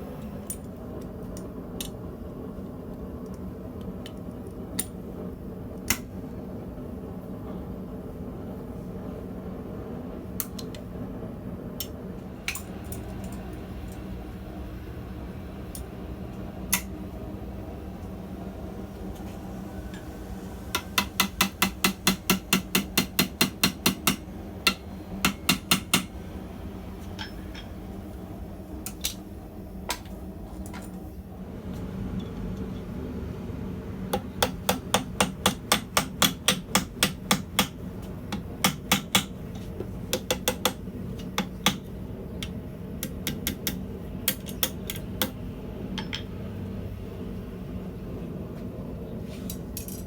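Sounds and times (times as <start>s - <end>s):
steady hum: 0.0s - 50.0s
hammer striking steel on anvil: 20.7s - 26.2s, 27.1s - 27.8s, 34.2s - 37.8s.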